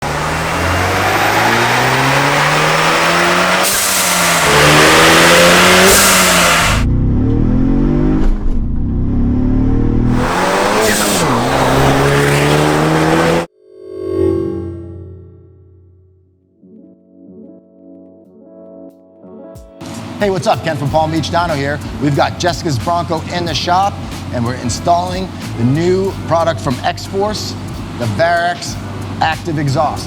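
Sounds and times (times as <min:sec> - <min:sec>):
engine exhaust accelerating: 0:00.0 - 0:13.5, 0:19.8 - 0:30.0.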